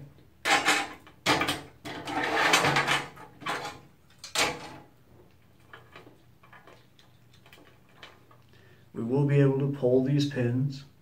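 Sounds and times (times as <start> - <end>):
cables rustling and clattering: 0.5 - 8.6.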